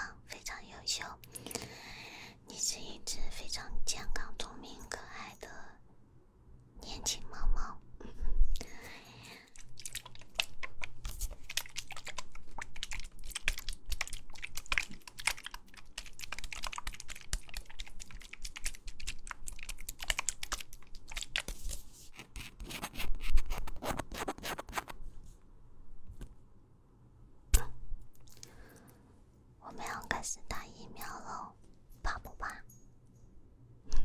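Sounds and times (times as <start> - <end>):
close tapping and scratching: 9.9 - 25.0.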